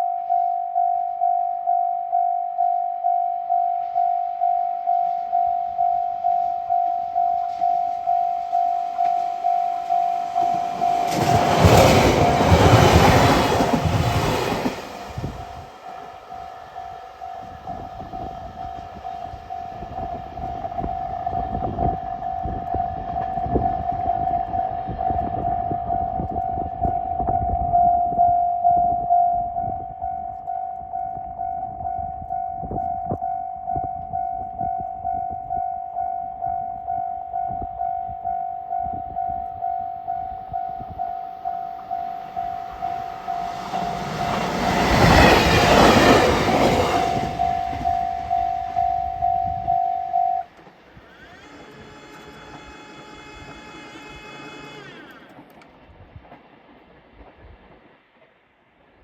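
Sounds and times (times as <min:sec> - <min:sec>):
level-crossing alarm ringing: 0:00.0 - 0:50.5
train passing loudly: 0:05.0 - 0:27.2, 0:38.7 - 0:59.0.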